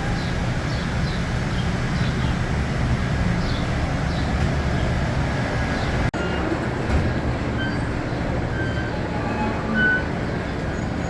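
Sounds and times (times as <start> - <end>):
train rumbling on track: 0.0 - 11.0
train wheel squeaks: 7.6 - 11.0.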